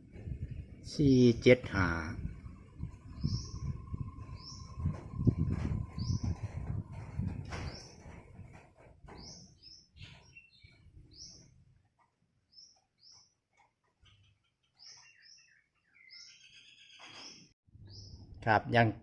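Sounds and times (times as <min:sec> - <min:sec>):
low rumbling noise: 0:00.0 - 0:09.6
small bird chirping: 0:02.7 - 0:06.5, 0:09.1 - 0:11.6, 0:12.5 - 0:18.3.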